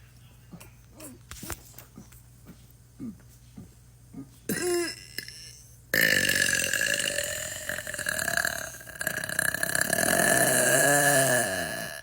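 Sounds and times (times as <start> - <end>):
woman belching: 4.5 - 5.4, 6.0 - 12.0.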